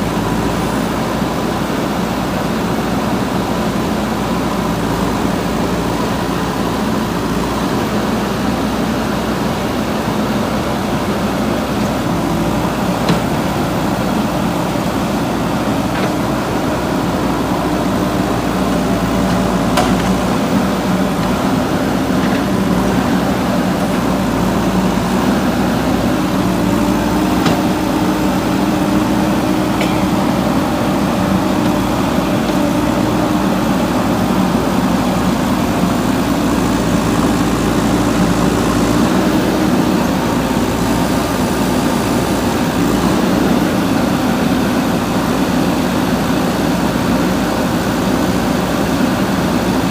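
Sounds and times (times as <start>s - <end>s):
diesel engine running: 0.0s - 49.9s.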